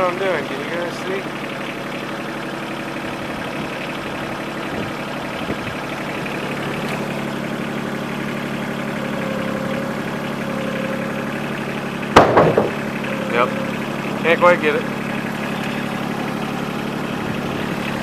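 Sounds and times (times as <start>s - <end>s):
tractor diesel engine running: 0.0s - 18.0s
faint steady whine: 8.8s - 11.7s, 13.0s - 14.6s.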